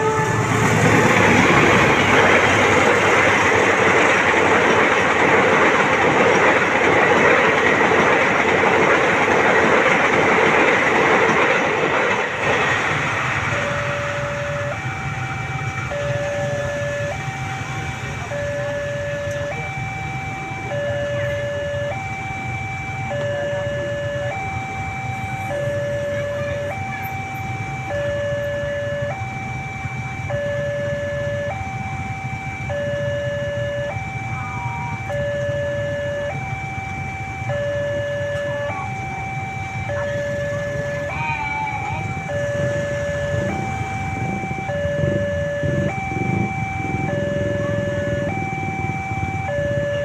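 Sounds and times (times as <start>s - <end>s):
two-tone warning siren: 0.0s - 50.0s.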